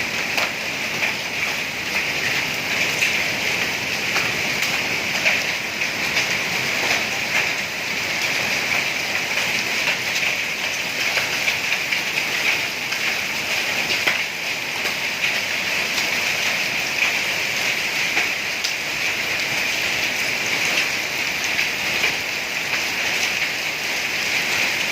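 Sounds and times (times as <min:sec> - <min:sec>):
heavy rain pouring: 0:00.0 - 0:24.9
raindrop ticks: 0:00.3 - 0:02.4, 0:18.1 - 0:18.8.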